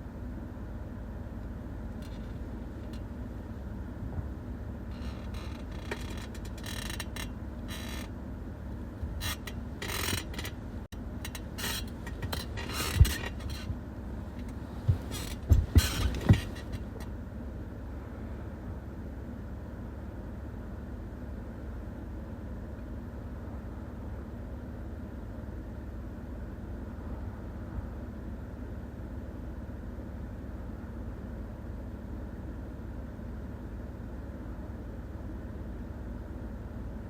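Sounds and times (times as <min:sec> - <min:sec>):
steady low hum: 0:00.0 - 0:37.0
soft bumps: 0:11.2 - 0:17.1
bedding rustling: 0:11.6 - 0:17.0.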